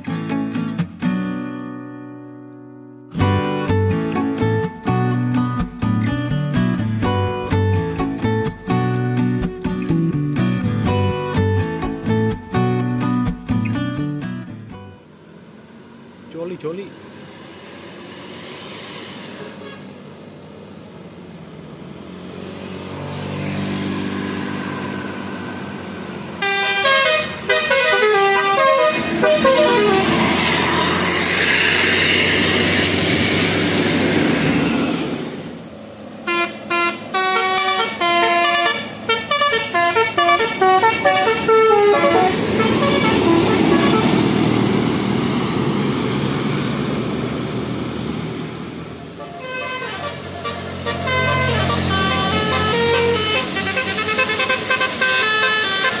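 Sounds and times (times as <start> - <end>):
bus engine: 3.1 - 56.0
musical air horn: 19.2 - 20.0, 26.4 - 32.8, 36.2 - 44.5, 49.1 - 56.0.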